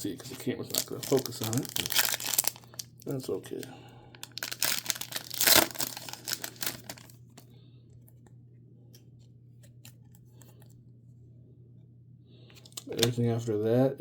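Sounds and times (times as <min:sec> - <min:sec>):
foil wrapper tearing and crinkling: 0:00.2 - 0:03.0, 0:04.2 - 0:07.2
cards and plastic ticking: 0:00.2 - 0:07.1.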